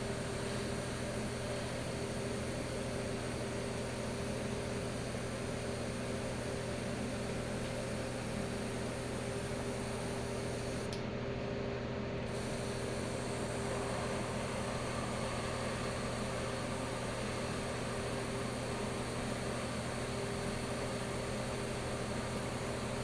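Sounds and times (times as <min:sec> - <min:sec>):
air compressor humming: 0:00.0 - 0:11.0, 0:12.3 - 0:23.0
airbrush hissing: 0:12.3 - 0:13.6.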